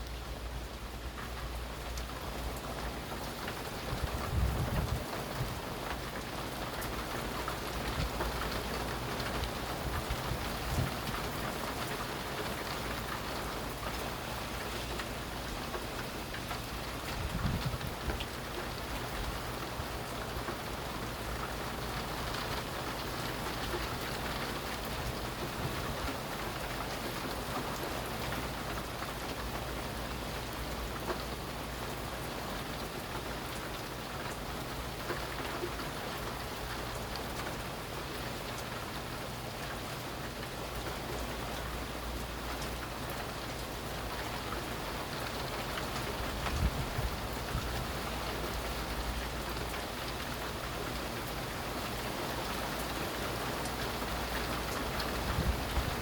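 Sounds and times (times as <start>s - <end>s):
steady rain falling: 0.0s - 56.0s.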